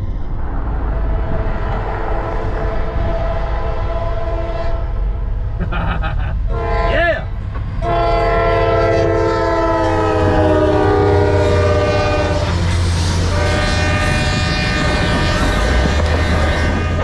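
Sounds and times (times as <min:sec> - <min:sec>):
train rumbling on rails: 0:00.0 - 0:17.0
locomotive air horn: 0:01.9 - 0:05.2, 0:06.5 - 0:07.0, 0:07.8 - 0:17.0.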